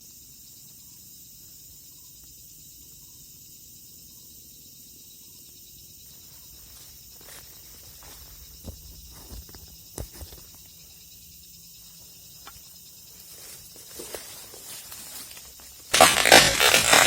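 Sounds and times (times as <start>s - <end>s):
high-pitched insect chorus: 0.0s - 17.0s
faint rustling: 6.2s - 11.0s.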